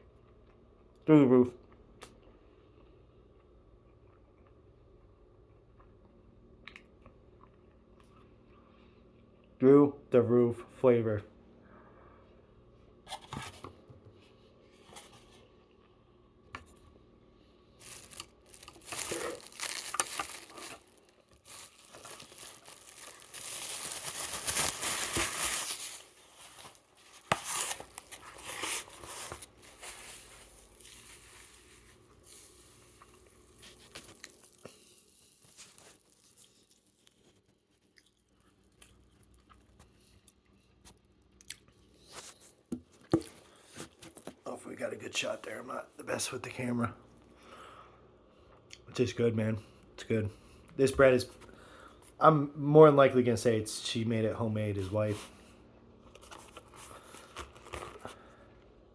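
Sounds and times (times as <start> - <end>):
flatbread tearing and crinkling: 17.8 - 41.0.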